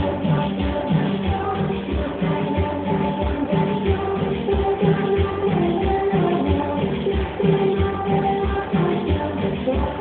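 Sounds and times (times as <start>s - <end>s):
loud cumbia music: 0.0s - 10.0s.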